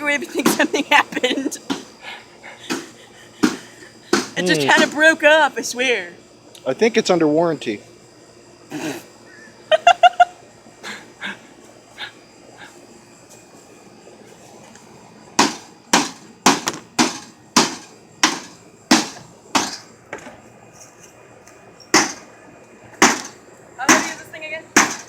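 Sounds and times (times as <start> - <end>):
hand tool striking microwave: 2.7 - 5.0, 15.4 - 20.3, 21.9 - 22.3, 23.0 - 24.2, 24.8 - 25.0.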